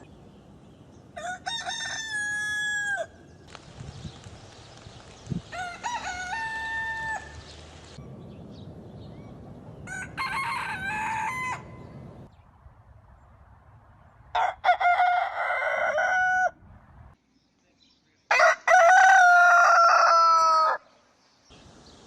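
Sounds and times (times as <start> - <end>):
roosters crowing: 1.1 - 3.2, 5.5 - 7.6, 9.8 - 12.3, 14.4 - 16.6, 18.3 - 20.9.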